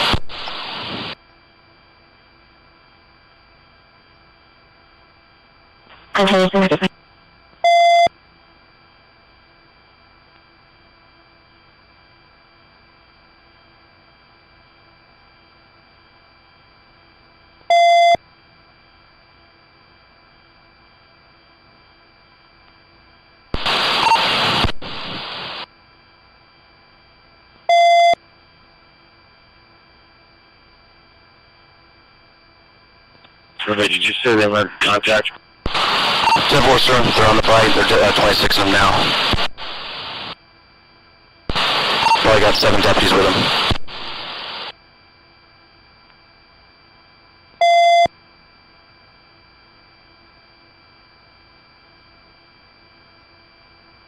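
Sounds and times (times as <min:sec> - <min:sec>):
radio static burst: 0:00.0 - 0:01.2, 0:06.0 - 0:06.9, 0:23.6 - 0:25.7, 0:33.6 - 0:40.4, 0:41.5 - 0:44.7
faint steady hum: 0:00.0 - 0:54.0
loud electronic beep: 0:36.1 - 0:39.0, 0:41.6 - 0:43.4.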